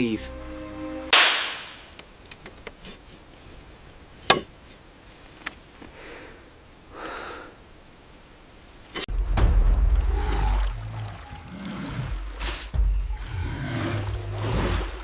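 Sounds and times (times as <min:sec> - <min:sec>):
sharp chop-like knock: 0:01.1 - 0:01.8.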